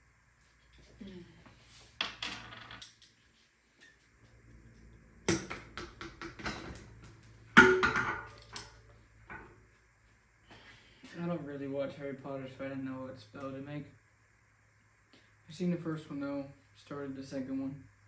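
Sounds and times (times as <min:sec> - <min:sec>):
hard objects knocking and rattling: 0:07.6 - 0:08.7.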